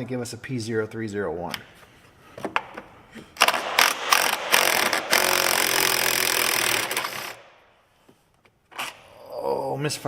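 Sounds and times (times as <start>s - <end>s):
handheld power tool running: 3.4s - 7.5s.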